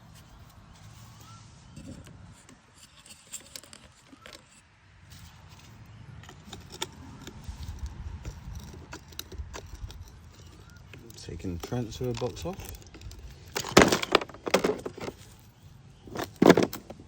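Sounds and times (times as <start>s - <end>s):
small hard pieces clicking: 6.2s - 15.5s.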